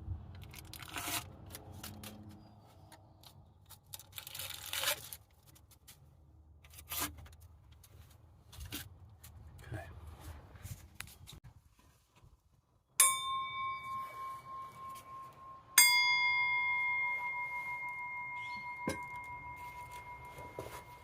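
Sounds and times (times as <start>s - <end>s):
metal object struck ringing: 13.0s - 21.0s.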